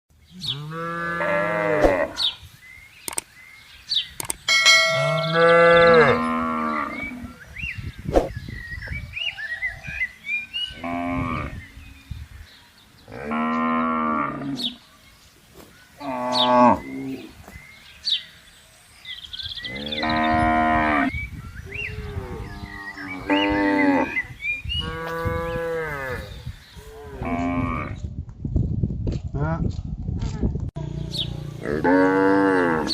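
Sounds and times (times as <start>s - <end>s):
cattle mooing: 0.4s - 2.2s, 4.9s - 7.4s, 31.6s - 32.9s.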